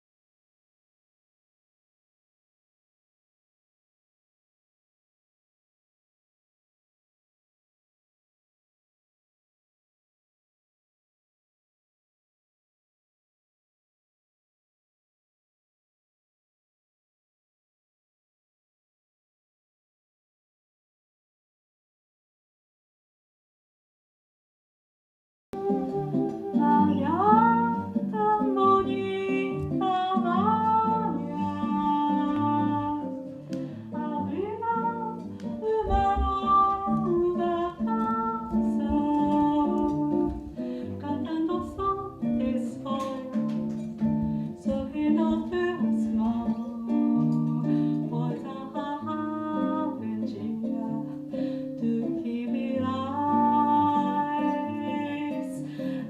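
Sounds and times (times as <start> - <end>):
acoustic guitar: 25.6 - 56.0
person singing: 25.6 - 56.0.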